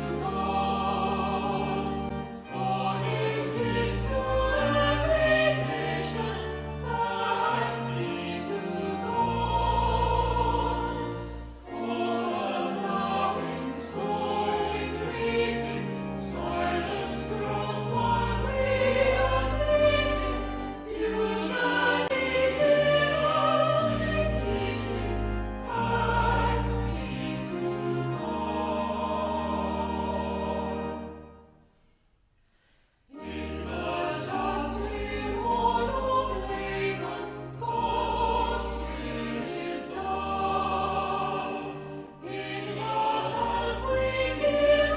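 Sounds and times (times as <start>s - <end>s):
instrumental accompaniment: 0.0s - 31.8s
choir singing church music: 0.0s - 31.9s, 33.0s - 44.9s.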